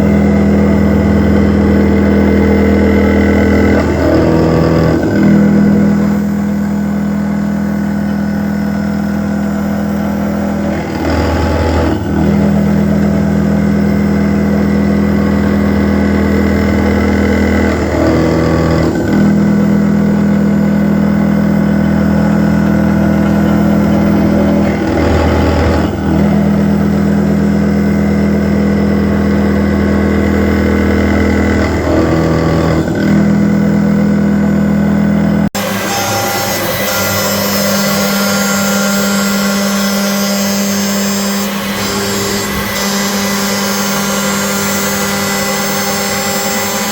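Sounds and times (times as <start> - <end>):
milling machine humming: 0.0 - 46.9.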